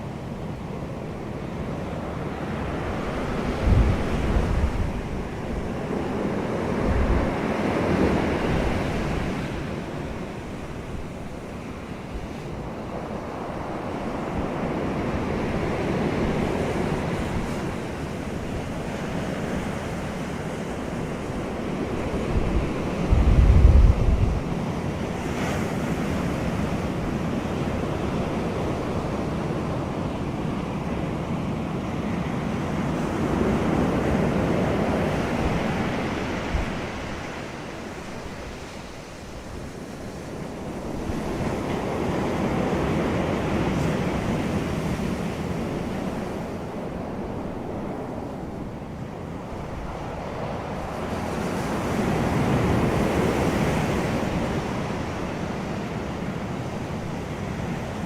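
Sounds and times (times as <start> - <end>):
ocean waves washing in: 0.0 - 58.0.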